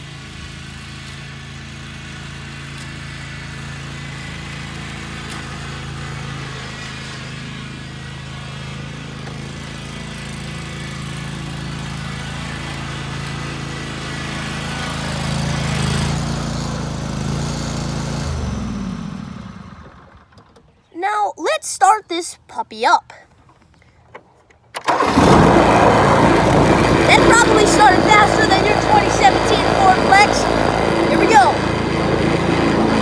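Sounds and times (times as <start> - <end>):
riding mower engine running: 0.0 - 20.5, 24.8 - 33.0.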